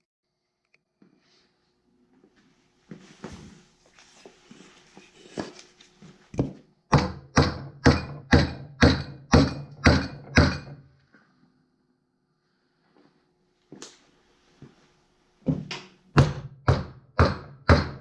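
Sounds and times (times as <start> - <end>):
hammer blows on wood with ring: 16.2 - 18.0.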